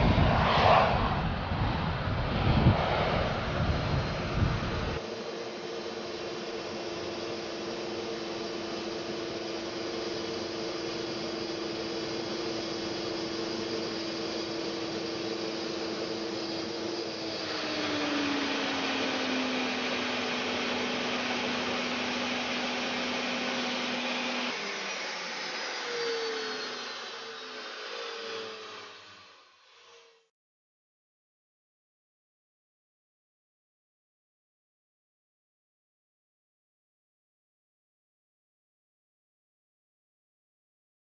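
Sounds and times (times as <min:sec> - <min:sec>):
aircraft engine rush: 0:00.0 - 0:29.2
aircraft engine whine: 0:00.0 - 0:30.3.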